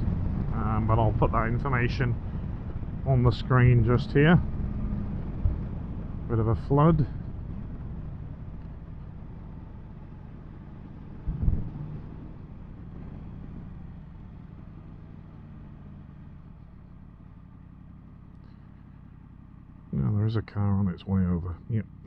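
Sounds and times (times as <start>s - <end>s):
motorcycle engine at low revs: 0.0s - 22.0s
road and wind noise: 0.0s - 22.0s
low thump: 5.0s - 6.2s, 11.2s - 12.1s.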